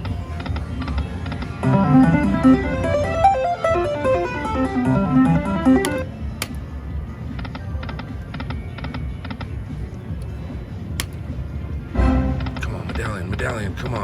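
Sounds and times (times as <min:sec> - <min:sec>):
slot machine jingle: 0:01.6 - 0:06.1
sharp clicks: 0:05.3 - 0:06.6.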